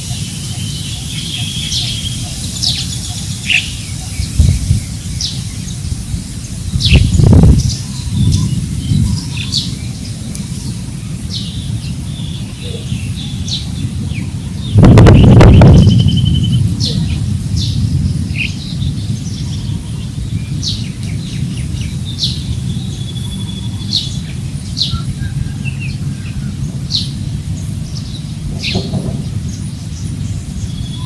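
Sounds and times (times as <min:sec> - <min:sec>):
birds chirping: 0:00.0 - 0:31.0
wind rumble on microphone: 0:00.0 - 0:31.0.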